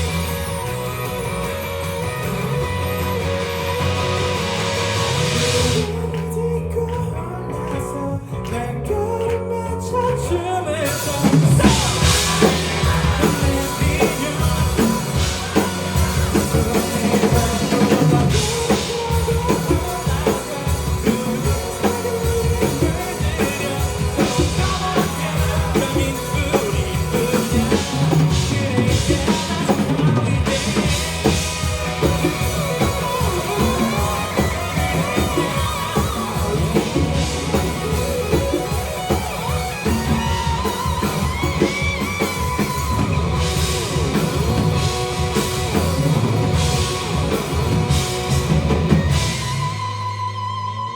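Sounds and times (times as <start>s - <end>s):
drum kit: 0.0s - 9.4s, 10.0s - 50.9s
person singing: 0.0s - 49.5s
live rock band playing: 0.0s - 50.9s.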